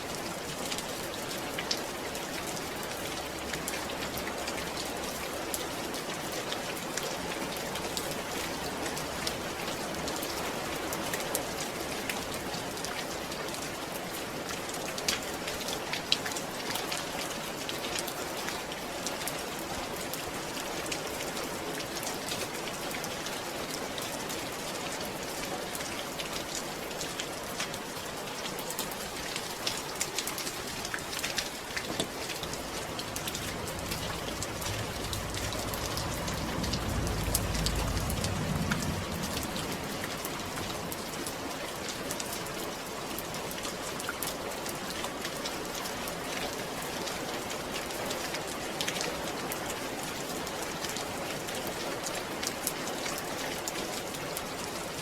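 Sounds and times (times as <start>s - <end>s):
rain falling: 0.0s - 55.0s
low rumble: 31.5s - 42.0s.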